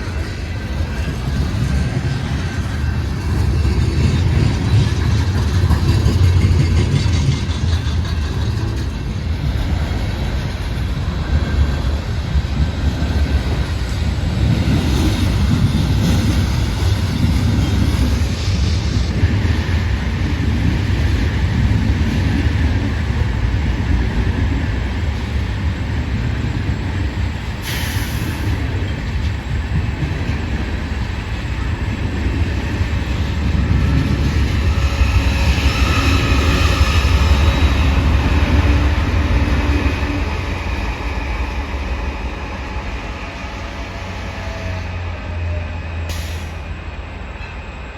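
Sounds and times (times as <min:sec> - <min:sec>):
freight train rumbling past: 0:00.0 - 0:47.9.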